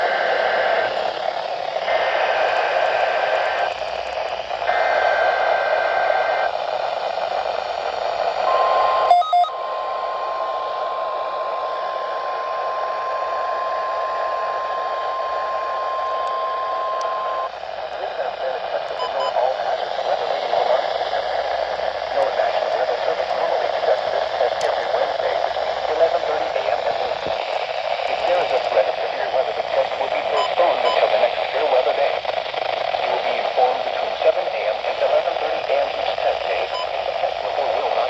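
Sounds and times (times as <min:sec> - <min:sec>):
radio static hiss: 0:00.0 - 0:38.0
digital data tone bursts: 0:08.5 - 0:09.6, 0:19.0 - 0:19.6, 0:30.3 - 0:31.1.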